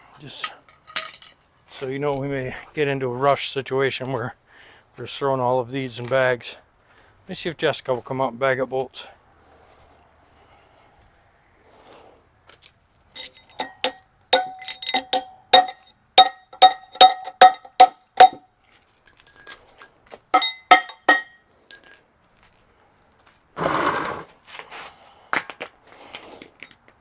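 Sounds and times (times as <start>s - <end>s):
steel bolts clinking on metal: 0.4s - 1.4s, 13.1s - 18.4s, 19.1s - 22.0s.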